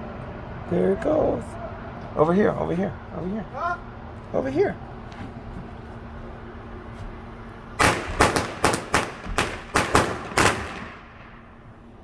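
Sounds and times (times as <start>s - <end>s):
fireworks bangs echoing: 7.8s - 11.9s.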